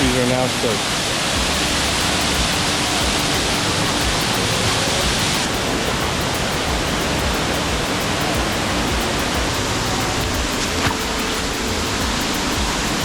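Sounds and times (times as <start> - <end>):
waterfall rushing: 0.0 - 13.0.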